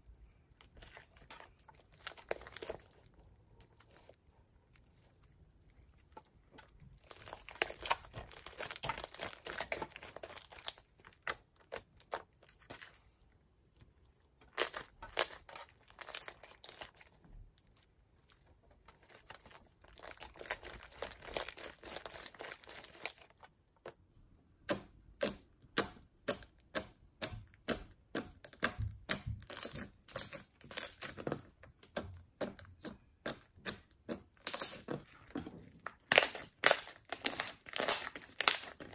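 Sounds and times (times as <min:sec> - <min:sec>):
slime squished by hand: 0:14.4 - 0:38.9
slime popping: 0:36.0 - 0:38.9.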